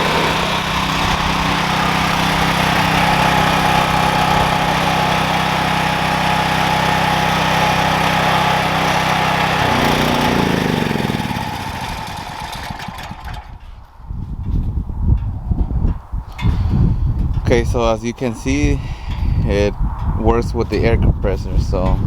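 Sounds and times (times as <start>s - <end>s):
air compressor running: 0.0s - 13.7s.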